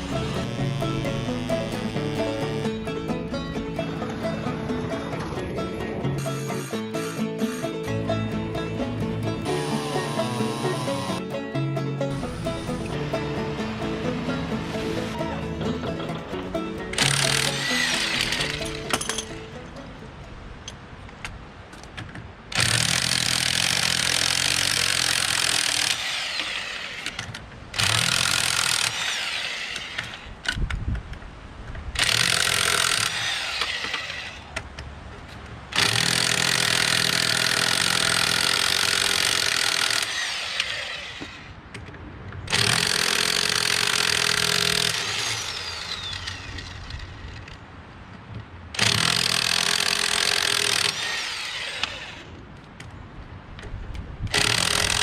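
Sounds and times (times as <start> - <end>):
impact wrench hammering: 48.8 - 51.2.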